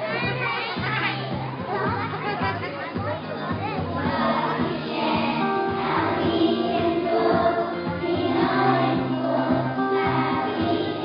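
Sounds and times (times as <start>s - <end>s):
music accompaniment: 0.0s - 11.0s
children singing together: 4.0s - 11.0s.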